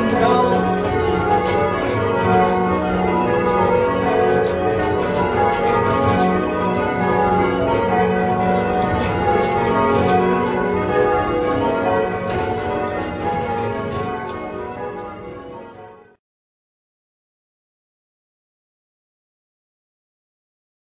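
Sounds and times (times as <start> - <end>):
church bells change ringing: 0.0 - 16.2.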